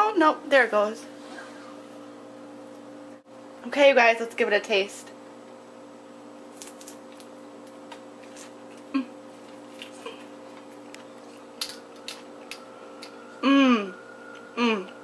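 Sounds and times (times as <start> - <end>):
low electrical hum: 0.0 - 15.0
crunchy chewing: 6.5 - 13.2.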